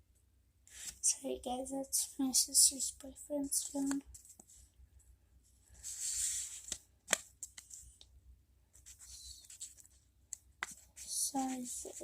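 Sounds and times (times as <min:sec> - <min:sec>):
paper rustling: 0:05.8 - 0:07.9, 0:10.6 - 0:12.0.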